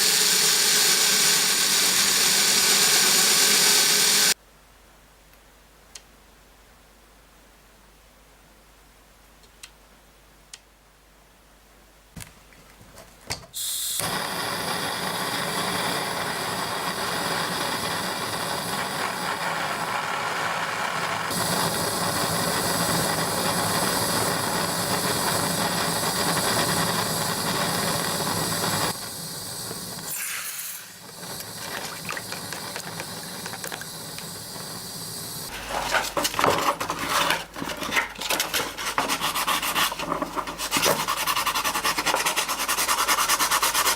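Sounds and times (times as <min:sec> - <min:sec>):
power tool whirring: 0:00.0 - 0:04.4
metal scraping and rubbing: 0:35.5 - 0:42.5.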